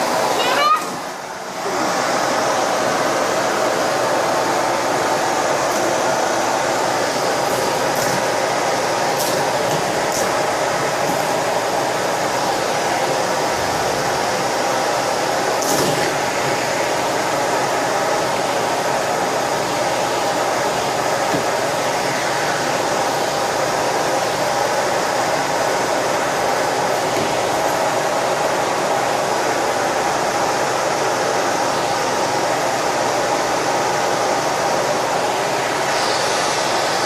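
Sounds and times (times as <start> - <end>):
vacuum cleaner running: 0.0 - 37.0.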